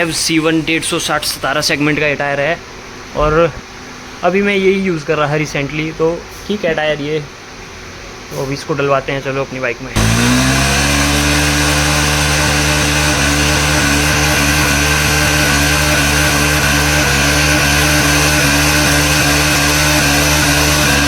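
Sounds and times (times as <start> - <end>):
motorcycle engine at high revs: 0.0 - 2.0, 10.0 - 21.0.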